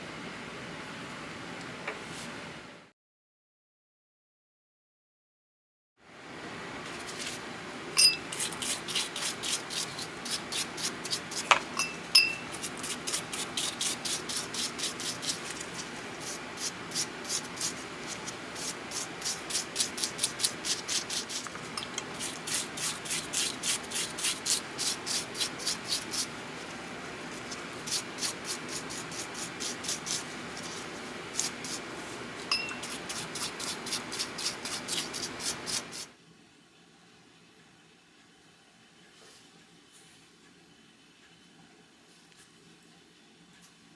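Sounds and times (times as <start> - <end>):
light metal clinks: 8.0 - 8.3, 11.8 - 12.5, 32.5 - 32.9
scrubbing strokes on metal: 8.0 - 36.1.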